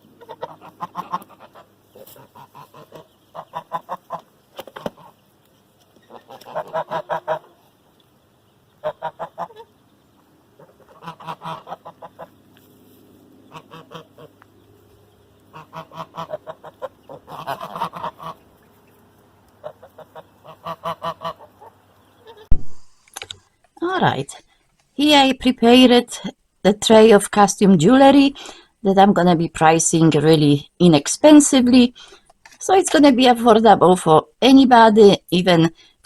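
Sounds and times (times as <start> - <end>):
geese honking: 0.0 - 22.5.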